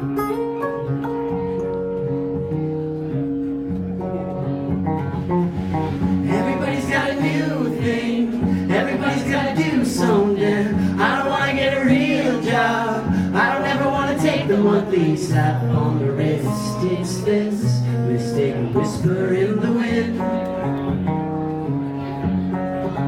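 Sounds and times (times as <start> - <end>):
acoustic guitar chords: 0.0 - 23.0
man singing: 6.2 - 20.4.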